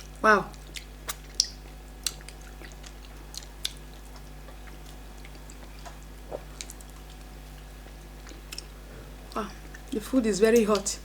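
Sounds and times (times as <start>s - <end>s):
wet chewing mouth clicks: 0.0s - 8.7s
low electrical hum: 0.0s - 11.0s.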